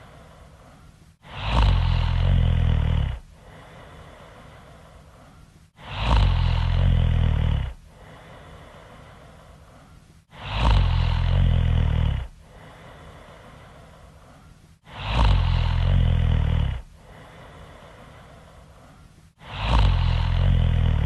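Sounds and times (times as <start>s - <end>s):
quiet breathing: 0.0s - 21.0s
person snoring loudly: 1.2s - 4.7s, 5.8s - 8.8s, 10.3s - 13.4s, 14.8s - 18.3s, 19.4s - 21.0s.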